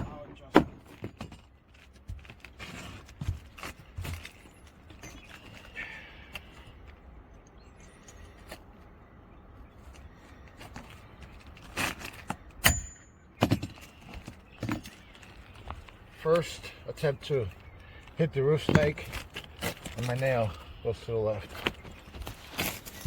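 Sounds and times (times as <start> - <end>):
hammer hitting metal tool: 12.6 - 13.1.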